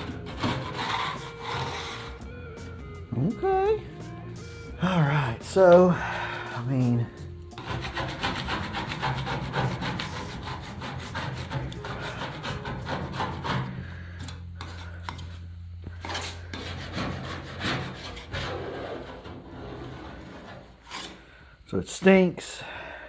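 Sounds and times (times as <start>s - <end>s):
hand scraper on painted metal: 0.0s - 2.3s, 6.5s - 15.4s, 16.0s - 21.3s
steady low hum: 0.0s - 23.0s.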